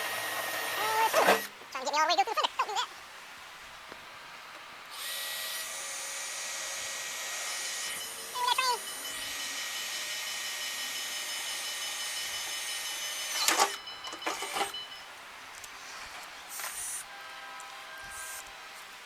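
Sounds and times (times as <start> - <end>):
electric drill drilling sheet metal: 0.0 - 1.6, 4.9 - 14.8.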